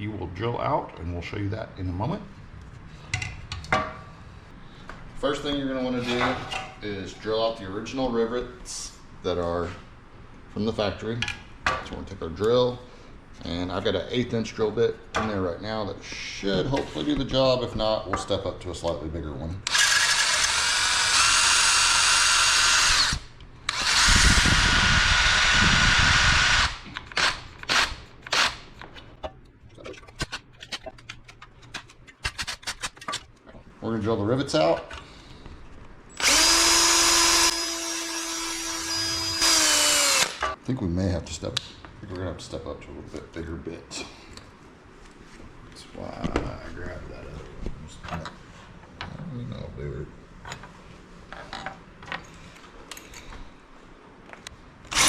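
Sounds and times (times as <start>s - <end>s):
power drill drilling: 19.7s - 28.6s, 36.2s - 40.6s.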